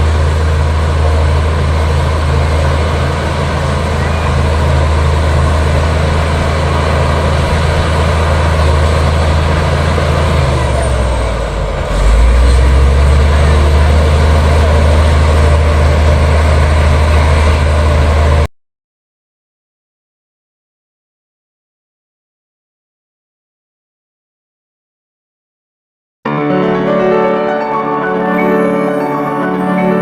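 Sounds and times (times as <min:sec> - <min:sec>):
bulldozer diesel engine droning: 0:00.0 - 0:18.5, 0:26.3 - 0:30.0.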